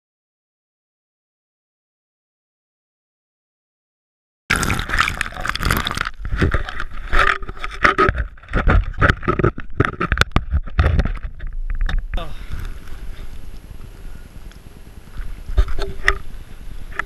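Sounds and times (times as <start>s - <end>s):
camera handling rustling: 4.8s - 12.0s.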